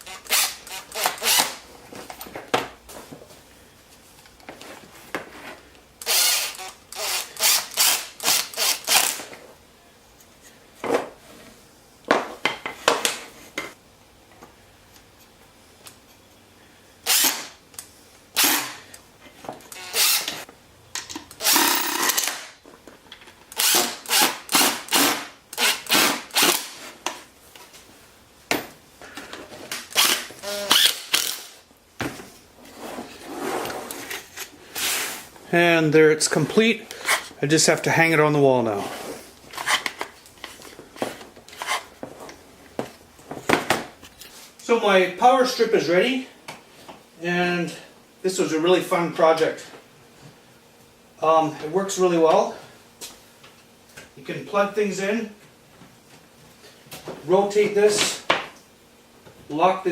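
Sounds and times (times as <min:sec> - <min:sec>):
power drill bursts: 0:00.0 - 0:01.6, 0:06.0 - 0:09.2, 0:17.0 - 0:17.5, 0:18.4 - 0:18.8, 0:19.7 - 0:20.4, 0:21.4 - 0:22.5, 0:23.5 - 0:26.8, 0:29.9 - 0:31.6.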